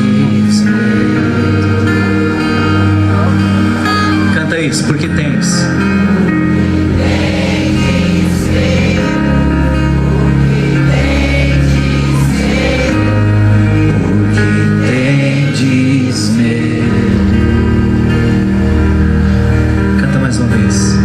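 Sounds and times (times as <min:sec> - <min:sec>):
band playing sustained chords: 0:00.0 - 0:21.0
steady bass line: 0:00.0 - 0:21.0
voices singing: 0:06.7 - 0:18.2.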